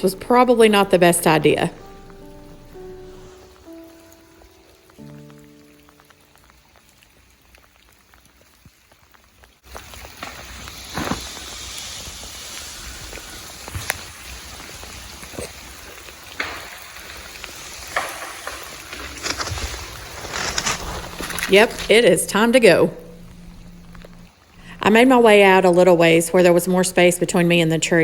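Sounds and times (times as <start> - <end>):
sleet pattering on trees: 1.4 - 24.4
branches cracking and snapping: 9.7 - 22.0.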